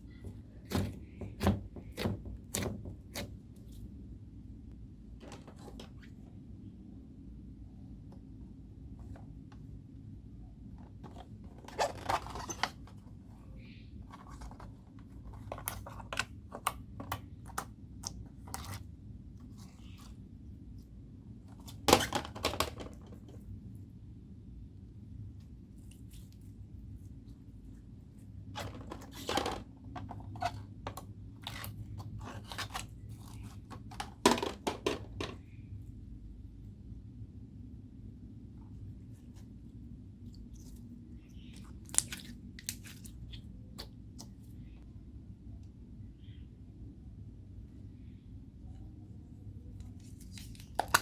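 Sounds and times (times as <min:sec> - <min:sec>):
hands squishing slime: 0:40.3 - 0:44.4.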